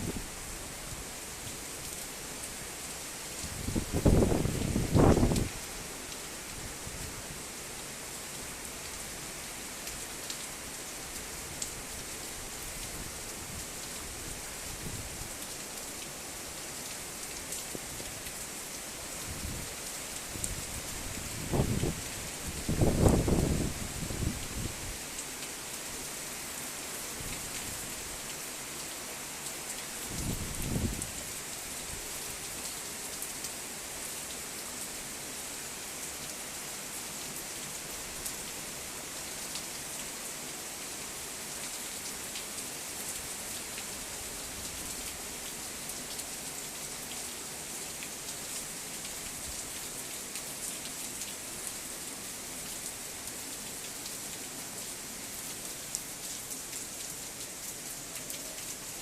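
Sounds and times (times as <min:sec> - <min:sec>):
heavy rain pattering: 0:03.4 - 0:06.6, 0:15.2 - 0:25.9, 0:53.6 - 0:59.0.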